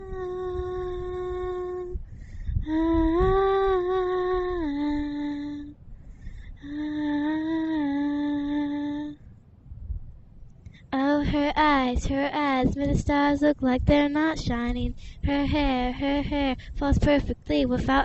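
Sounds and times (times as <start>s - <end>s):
person humming: 0.0s - 2.0s, 2.6s - 5.8s, 6.6s - 9.2s
wind rumble on microphone: 0.0s - 18.0s.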